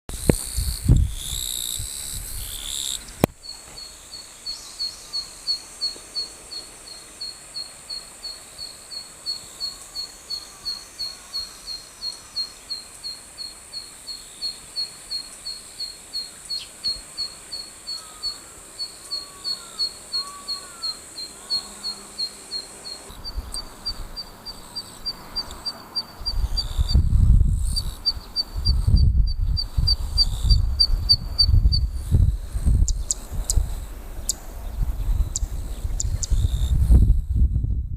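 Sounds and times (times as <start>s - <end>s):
wind rumble on microphone: 0.1s - 3.5s, 23.1s - 37.9s.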